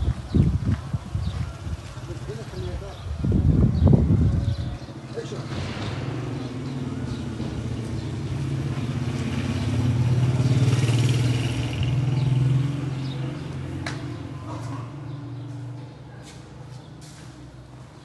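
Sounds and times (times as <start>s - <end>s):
vehicle engine passing: 3.9s - 18.0s.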